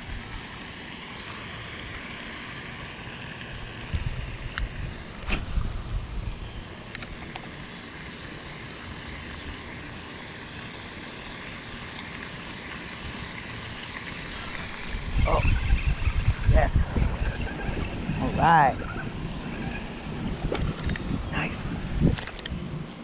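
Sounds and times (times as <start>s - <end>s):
outdoor background noise: 0.0s - 23.0s.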